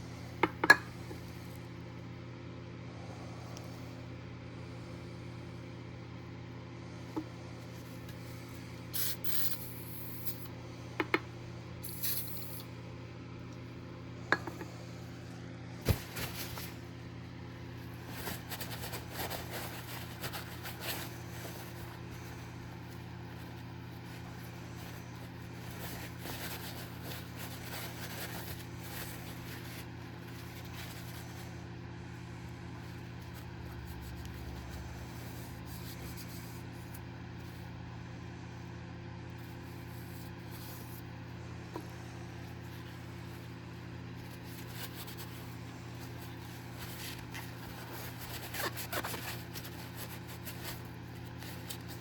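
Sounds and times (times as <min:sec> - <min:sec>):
rubbing and scraping: 0:42.6 - 0:52.0.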